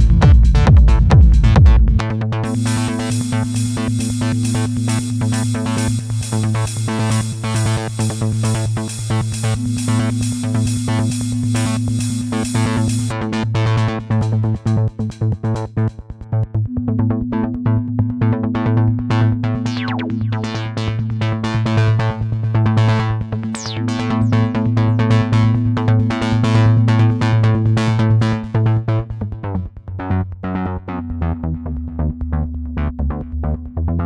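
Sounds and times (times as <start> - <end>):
drum machine percussive hits: 0.0 - 13.1
sustained synth bass: 0.0 - 34.0
synth keyboard lines: 2.4 - 14.9, 16.7 - 29.4.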